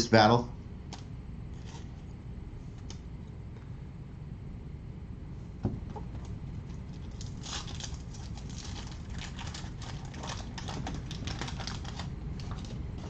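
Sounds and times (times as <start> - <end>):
steady low hum: 0.0 - 13.0
wax paper crinkling: 6.6 - 13.0.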